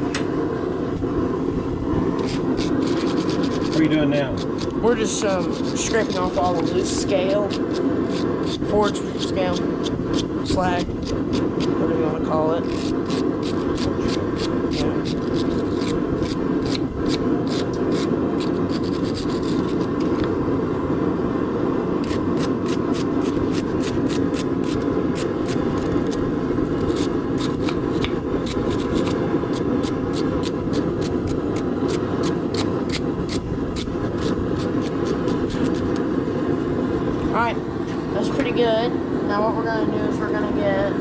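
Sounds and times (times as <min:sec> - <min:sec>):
brush scraping metal: 0:02.2 - 0:10.3, 0:12.6 - 0:20.2, 0:26.8 - 0:36.0.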